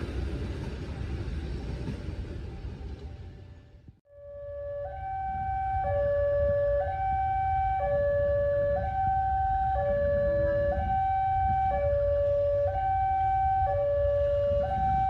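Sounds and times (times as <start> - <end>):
two-tone electronic warning signal: 4.1 - 15.0.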